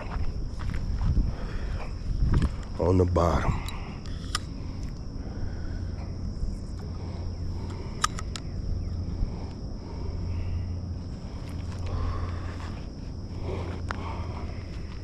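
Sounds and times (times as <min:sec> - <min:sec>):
insects droning: 0:00.0 - 0:15.0
low rumble: 0:00.0 - 0:15.0
sharp clicks: 0:03.6 - 0:05.0, 0:07.6 - 0:08.5.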